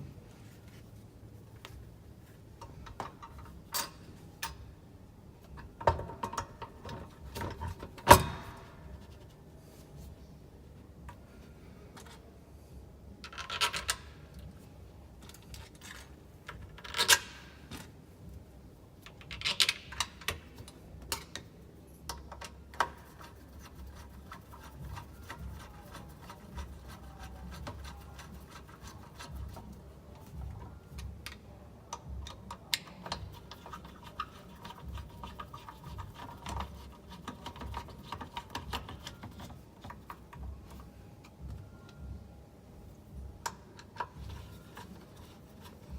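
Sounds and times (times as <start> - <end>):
hands rubbing and scraping: 22.9 - 29.9.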